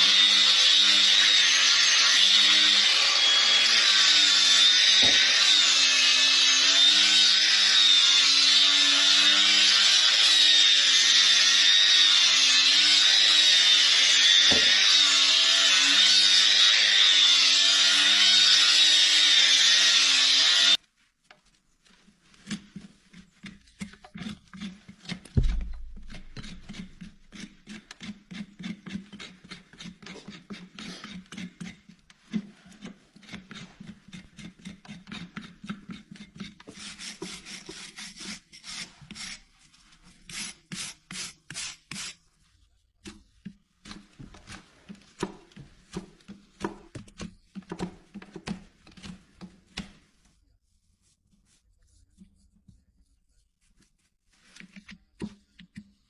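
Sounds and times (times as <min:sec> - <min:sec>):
rasp scraping a hoof: 0:22.0 - 0:42.3.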